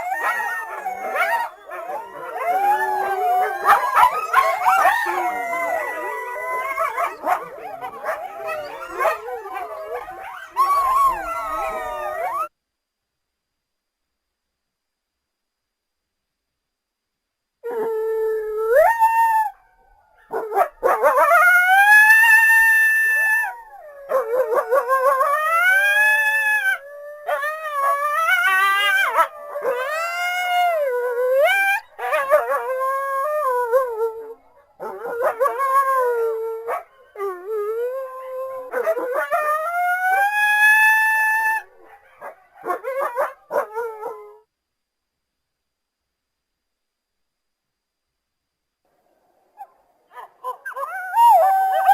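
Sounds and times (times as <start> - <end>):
coyotes howling and yipping: 0.0 - 12.5, 17.7 - 44.4, 49.6 - 51.9.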